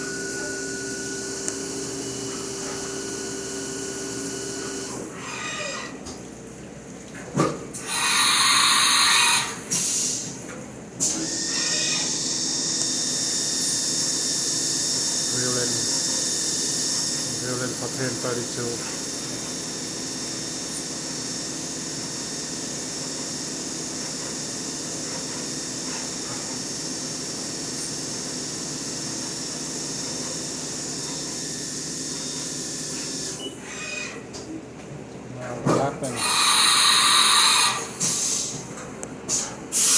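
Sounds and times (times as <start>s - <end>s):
milling machine high-pitched whine: 0.0s - 5.8s, 7.8s - 9.6s, 11.3s - 23.4s, 36.0s - 38.5s.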